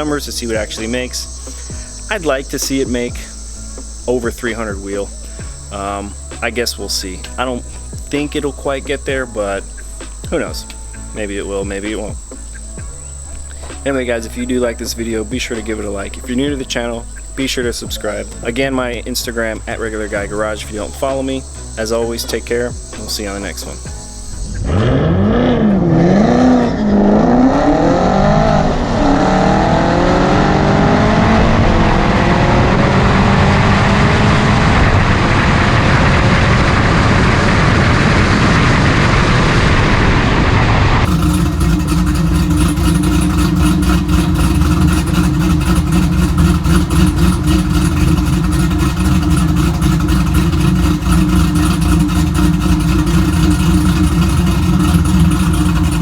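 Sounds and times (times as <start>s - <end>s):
car engine revving: 0.0s - 56.0s
car engine running steadily: 0.0s - 56.0s.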